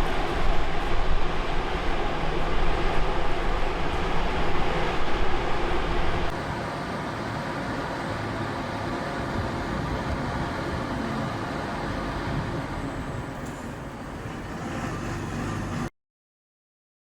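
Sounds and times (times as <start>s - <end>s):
boiler flue droning hum: 0.0s - 12.8s.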